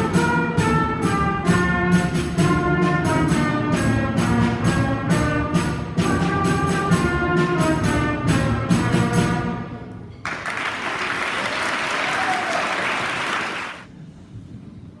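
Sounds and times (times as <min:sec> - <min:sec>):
school band brass playing: 0:00.0 - 0:09.9, 0:10.5 - 0:13.9
audience applauding: 0:10.2 - 0:13.9.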